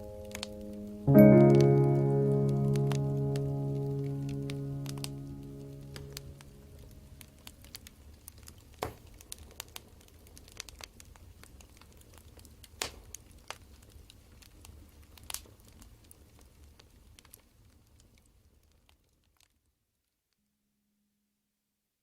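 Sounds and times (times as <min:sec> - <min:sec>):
wood fire crackling: 0:00.0 - 0:19.6
fire pops: 0:07.5 - 0:17.5.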